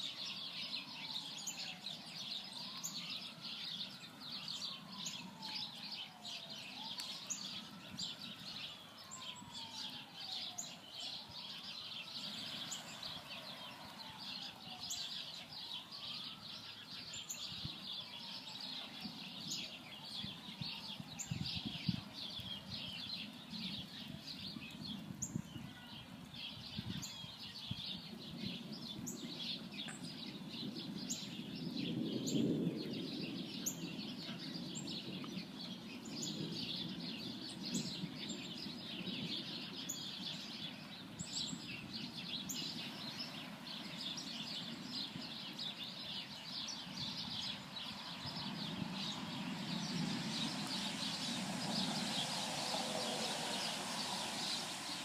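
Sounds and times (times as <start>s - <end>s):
birds chirping: 0.0s - 55.0s
distant wailing siren: 0.0s - 55.0s
low rumble: 49.0s - 55.0s.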